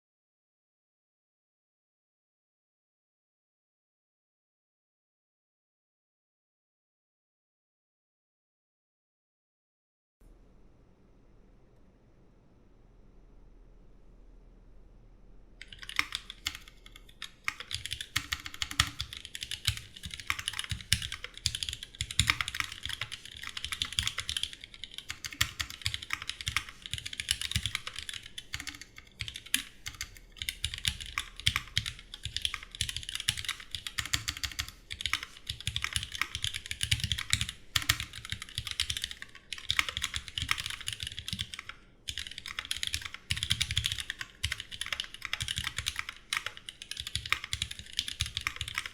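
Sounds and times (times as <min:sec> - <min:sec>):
fast mechanical keyboard typing: 0:15.6 - 0:48.9.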